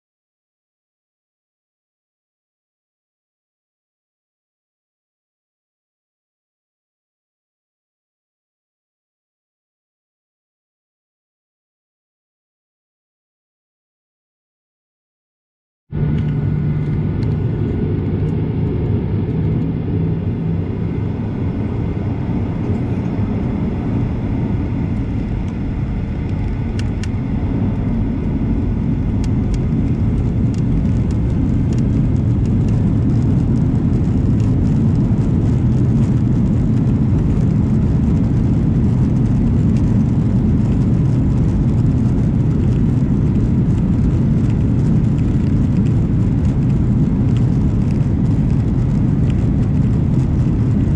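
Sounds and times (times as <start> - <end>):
jet engines rumbling: 15.9 - 50.9.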